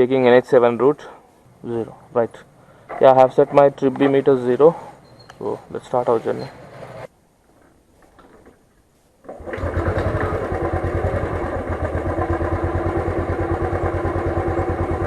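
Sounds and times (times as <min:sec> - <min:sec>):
motorcycle engine starting and idling: 0:09.2 - 0:15.0.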